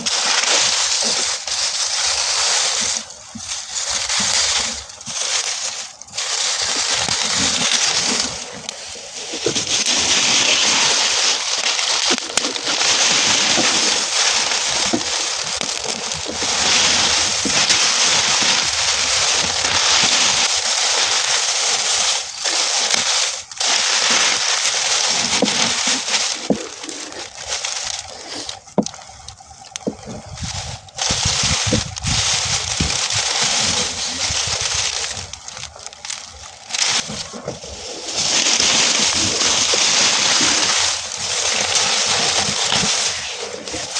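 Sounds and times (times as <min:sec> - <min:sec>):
burning straw crackling: 0:00.0 - 0:43.9.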